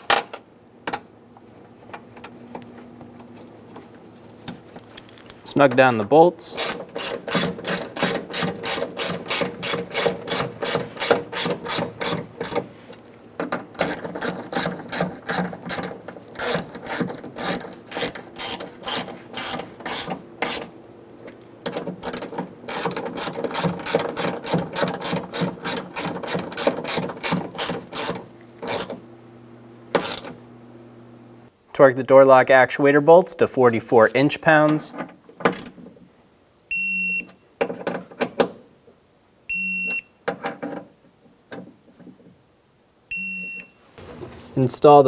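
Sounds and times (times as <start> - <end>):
ratchet wrench clicking: 6.6 - 12.6, 16.4 - 20.7, 22.0 - 28.9.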